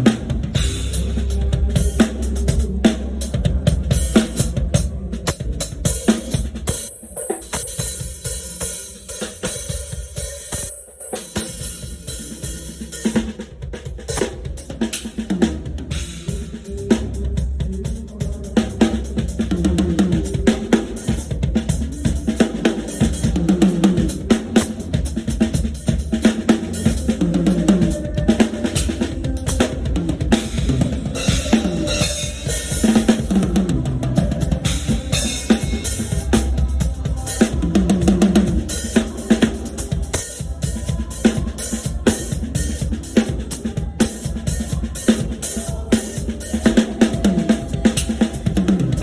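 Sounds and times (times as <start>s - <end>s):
drum kit groove: 0.0s - 49.0s.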